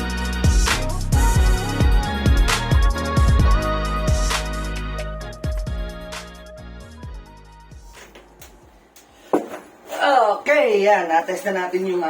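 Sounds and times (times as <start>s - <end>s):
hip-hop drum beat with bass: 0.0s - 6.0s.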